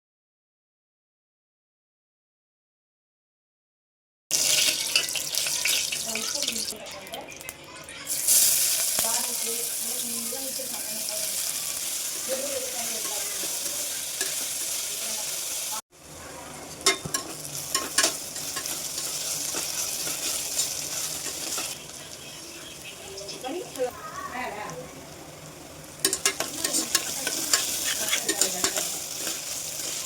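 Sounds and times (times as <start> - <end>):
oil sizzling in a pan: 4.3 - 30.0
utensil clicking against pan: 26.0 - 29.4.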